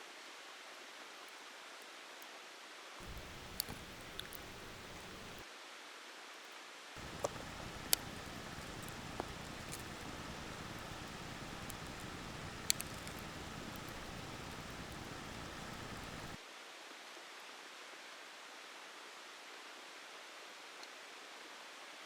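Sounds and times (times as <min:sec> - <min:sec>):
campfire hissing: 0:03.0 - 0:05.4, 0:07.0 - 0:16.4
fire crackling pops: 0:03.0 - 0:05.4, 0:07.0 - 0:16.4.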